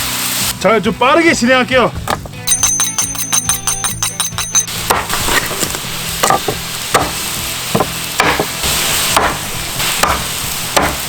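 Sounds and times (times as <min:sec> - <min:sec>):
liquid sizzling on hot metal: 0:00.0 - 0:01.6, 0:04.7 - 0:11.0
sharp knocks or clinks: 0:02.5 - 0:05.1.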